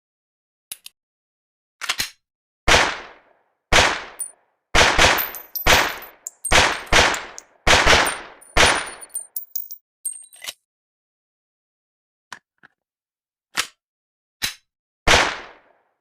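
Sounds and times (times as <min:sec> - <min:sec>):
pistol shots with echo: 0:02.7 - 0:09.1, 0:15.1 - 0:15.7.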